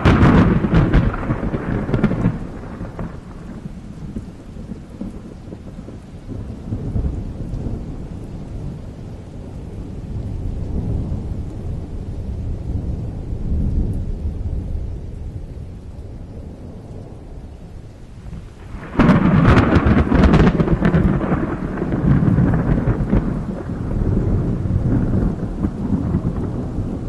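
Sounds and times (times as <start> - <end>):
sharp thunderclap: 0.0 - 7.8, 18.2 - 27.0
faint rain hiss: 0.0 - 27.0
low rolling thunder: 0.0 - 27.0.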